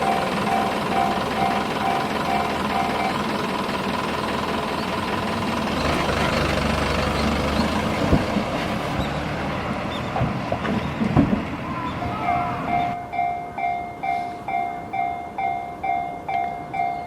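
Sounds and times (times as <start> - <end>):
crossing warning bell ringing: 0.0 - 5.7, 11.6 - 17.0
train rumble: 0.0 - 17.0.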